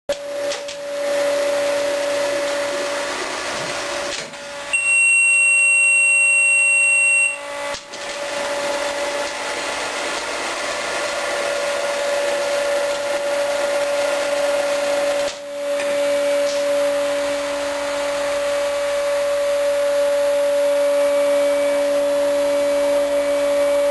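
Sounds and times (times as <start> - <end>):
vacuum generator humming and rushing: 0.1 - 23.9
loud high steady beep: 4.7 - 7.5.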